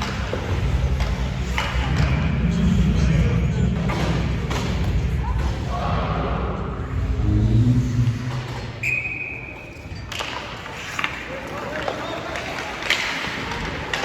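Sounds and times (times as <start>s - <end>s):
indistinct voices: 0.0s - 14.0s
whistle blast: 8.8s - 9.7s.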